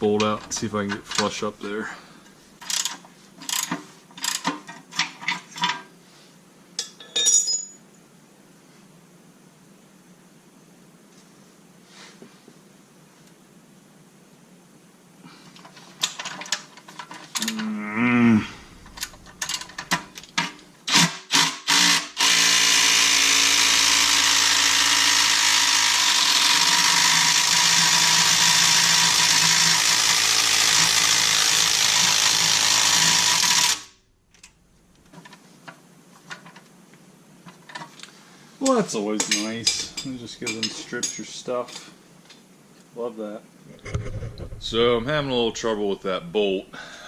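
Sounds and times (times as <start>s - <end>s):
cordless power tool running: 21.3s - 33.9s.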